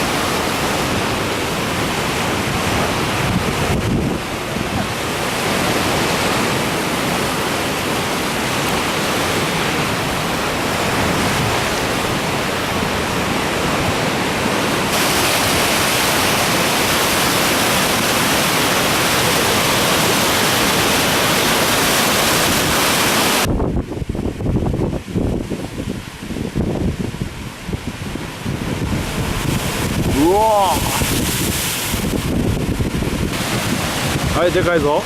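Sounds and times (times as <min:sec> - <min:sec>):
heavy surf breaking: 0:00.0 - 0:35.0.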